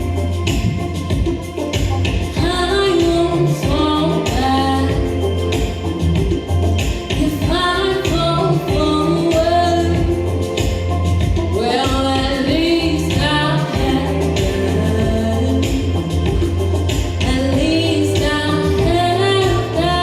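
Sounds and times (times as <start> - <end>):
drum hits: 0.0 - 11.5
bass line: 0.0 - 20.0
woman singing lead: 0.0 - 20.0.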